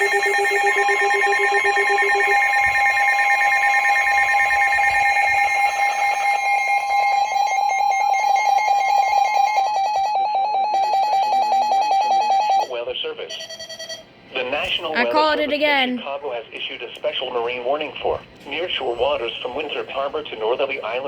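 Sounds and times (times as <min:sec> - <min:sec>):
electronic alarm tones: 0:00.0 - 0:14.1
low pulsing beep: 0:00.0 - 0:14.1.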